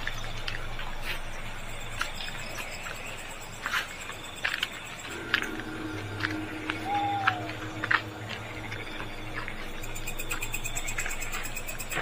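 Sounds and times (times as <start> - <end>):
crickets chirping: 0.0 - 12.0
low hum: 0.0 - 12.0.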